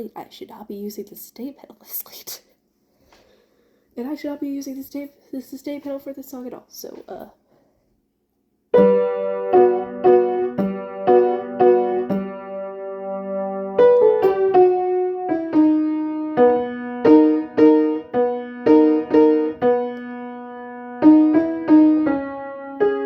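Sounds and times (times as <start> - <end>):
piano melody: 8.7 - 23.0.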